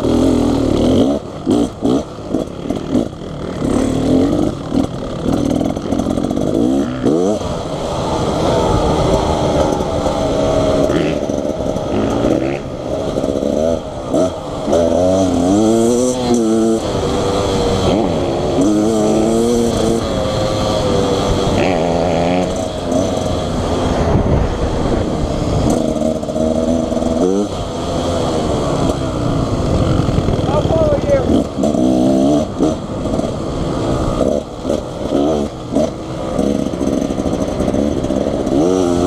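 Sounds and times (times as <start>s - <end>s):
dirt bike engine revving: 0.0s - 39.0s.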